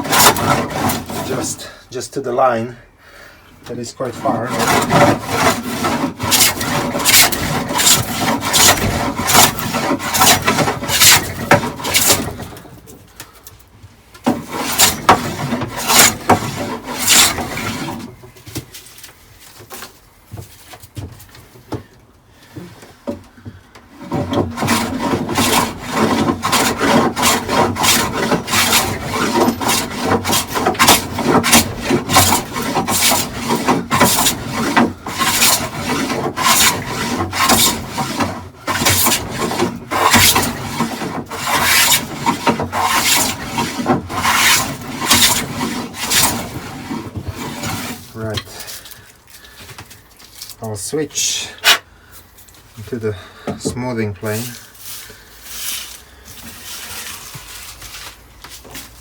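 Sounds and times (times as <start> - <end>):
hand plane strokes on wood: 0.0 - 1.8, 3.7 - 12.8, 14.2 - 18.3, 23.9 - 49.5.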